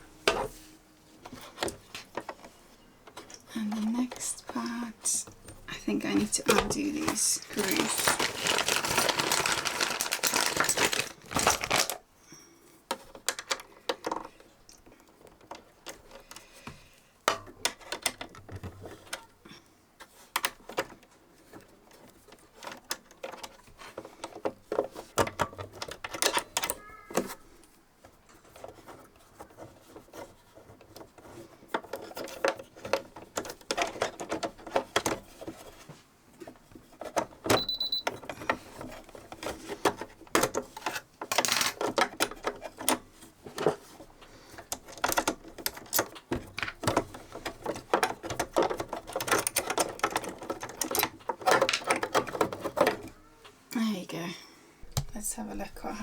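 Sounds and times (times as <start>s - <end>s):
rustling noise: 0.0s - 12.0s, 27.3s - 37.9s.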